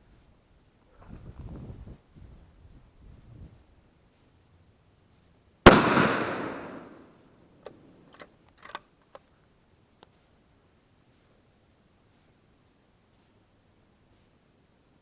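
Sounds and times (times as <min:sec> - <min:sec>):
rifle shot with echo: 0:05.7 - 0:07.1.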